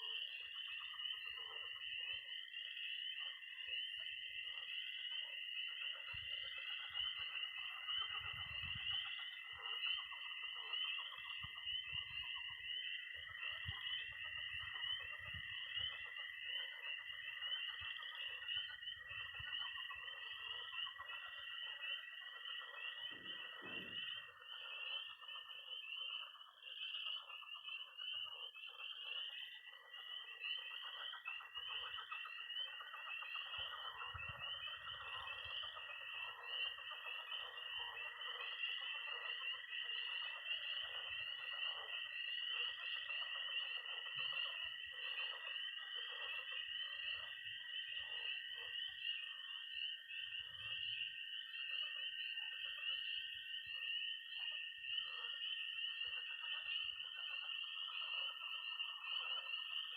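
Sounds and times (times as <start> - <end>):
frogs croaking: 0.0 - 59.9
spring peepers peeping: 0.0 - 59.9
toad high-pitched trill: 0.0 - 59.9.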